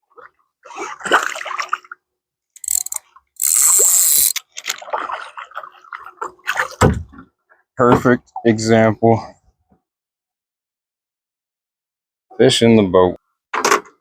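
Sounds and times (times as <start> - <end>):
water splashing and sloshing: 0.0 - 8.4.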